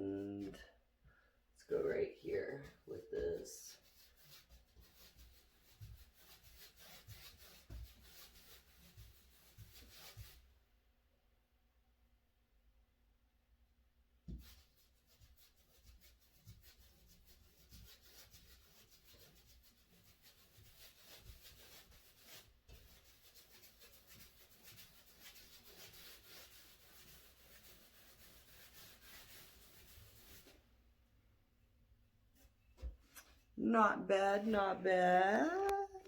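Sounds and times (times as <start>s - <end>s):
paintbrush bristles scratching: 2.5s - 10.5s, 14.3s - 30.6s.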